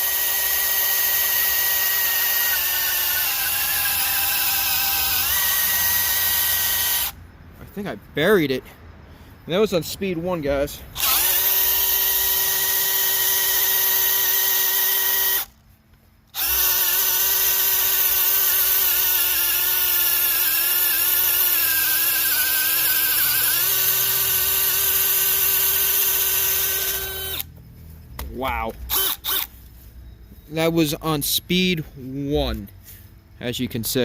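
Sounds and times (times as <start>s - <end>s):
cordless drill boring into wood: 0.0s - 7.2s, 11.0s - 15.5s, 16.4s - 27.5s, 28.9s - 29.5s.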